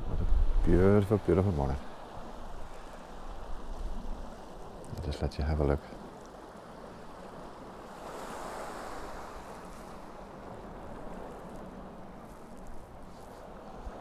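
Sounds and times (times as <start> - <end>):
wind on microphone: 0.0 - 4.5
sea waves washing on rocks: 0.4 - 14.0.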